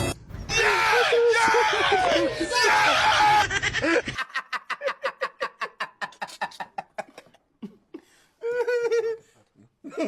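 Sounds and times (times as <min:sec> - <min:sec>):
person laughing: 0:03.4 - 0:10.0.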